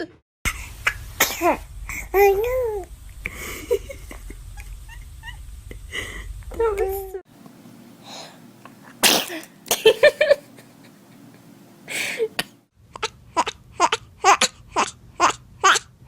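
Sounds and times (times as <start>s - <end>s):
baby sneezing: 9.0s - 9.5s.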